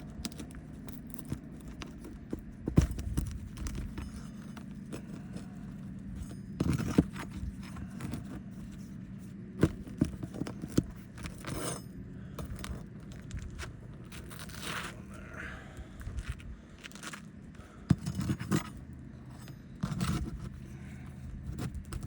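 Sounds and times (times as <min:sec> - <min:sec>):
metal tool scraping shingles: 0:10.2 - 0:12.6, 0:14.1 - 0:15.2.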